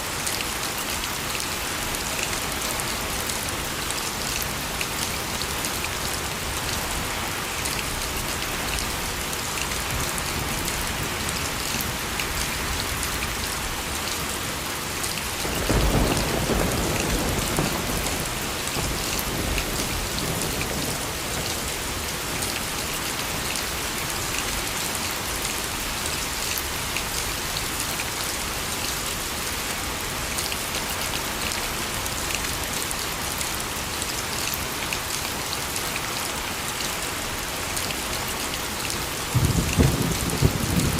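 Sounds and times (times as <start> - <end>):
steady rain falling: 0.0 - 40.9
low rumble of thunder: 15.4 - 22.1, 39.3 - 40.9.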